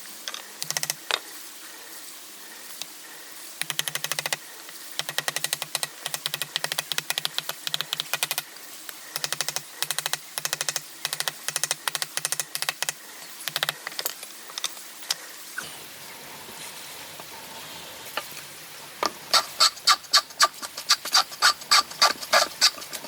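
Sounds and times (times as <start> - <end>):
hand tool rasping wood: 19.3 - 23.0.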